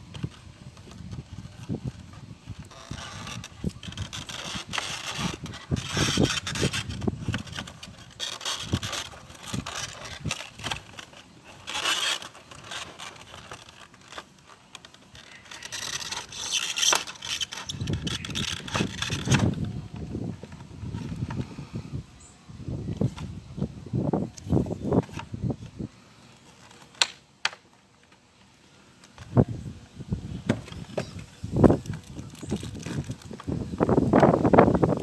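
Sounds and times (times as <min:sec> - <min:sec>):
packaging crinkling: 0:00.2 - 0:21.1, 0:30.7 - 0:33.8.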